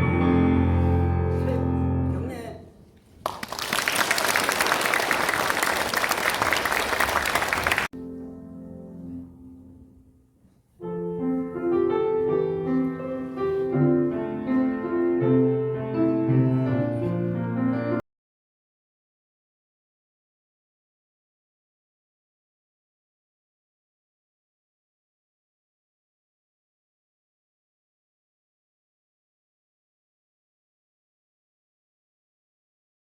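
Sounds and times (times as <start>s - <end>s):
piano playing melody over chords: 0.0s - 2.2s, 8.0s - 10.2s, 10.8s - 18.0s
applause: 3.2s - 7.9s.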